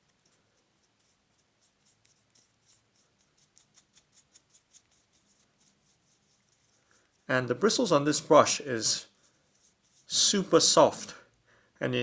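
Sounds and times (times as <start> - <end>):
brush strokes on lens glass: 0.0 - 11.2.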